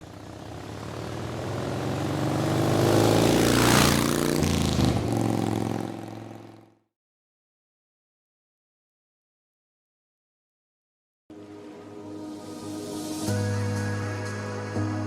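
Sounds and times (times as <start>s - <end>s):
motorcycle engine running: 0.0s - 6.8s.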